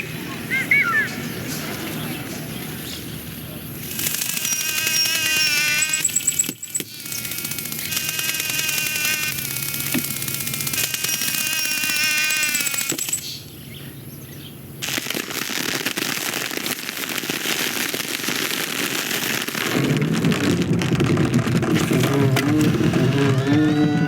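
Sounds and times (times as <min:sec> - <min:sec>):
dense crackling rattle: 0:03.8 - 0:13.4, 0:14.8 - 0:24.0
low pitched drone: 0:21.6 - 0:24.0.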